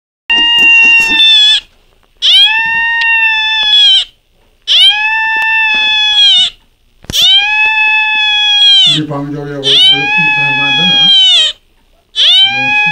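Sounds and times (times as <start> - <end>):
dog howling: 9.7 - 11.6, 12.2 - 12.9.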